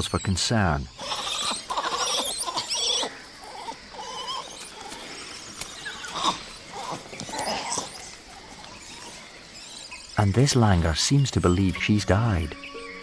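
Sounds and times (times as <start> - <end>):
monkeys high-pitched calls: 0.9 - 10.2.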